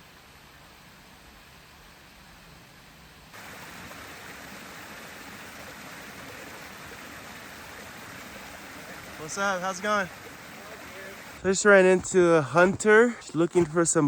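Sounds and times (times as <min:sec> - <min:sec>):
mountain creek rushing: 0:03.3 - 0:14.0.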